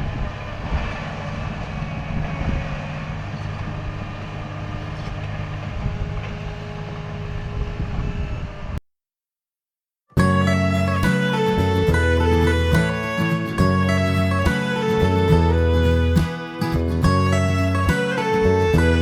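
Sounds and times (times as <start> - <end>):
diesel engine rough clatter: 10.2 - 19.0.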